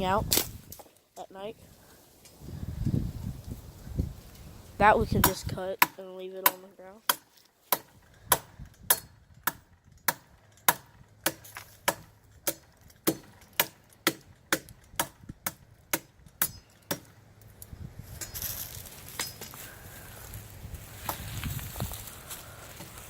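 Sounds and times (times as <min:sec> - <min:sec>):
machete chopping wood: 0:05.2 - 0:17.1.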